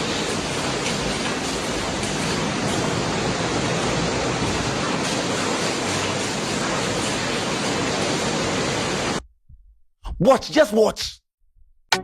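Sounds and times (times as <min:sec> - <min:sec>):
rushing floodwater: 0:00.0 - 0:09.2.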